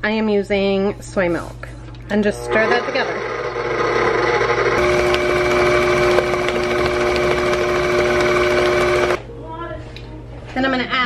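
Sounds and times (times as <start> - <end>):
electric mixer motor hum: 2.4 - 9.2.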